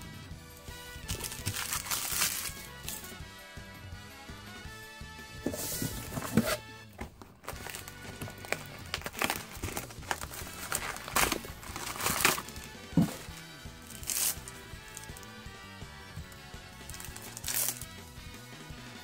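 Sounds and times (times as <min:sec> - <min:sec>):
background music: 0:00.0 - 0:19.0
foil wrappers crinkling: 0:00.7 - 0:03.1, 0:05.4 - 0:15.3, 0:16.8 - 0:18.0.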